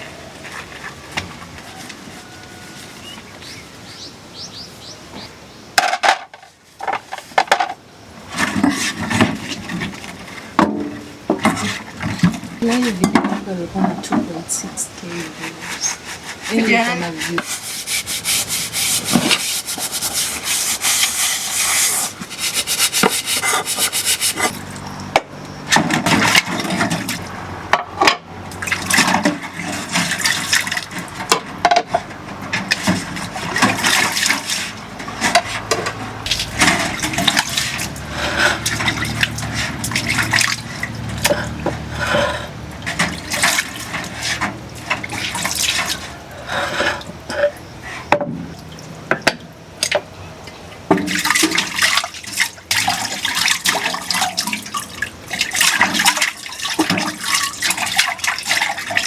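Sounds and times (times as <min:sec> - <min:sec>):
scrubbing dishes: 0:06.8 - 0:24.8, 0:25.7 - 0:27.4, 0:28.5 - 0:50.1, 0:50.8 - 0:59.0
water splashing: 0:28.4 - 0:31.4, 0:32.2 - 0:47.3, 0:50.7 - 0:59.0.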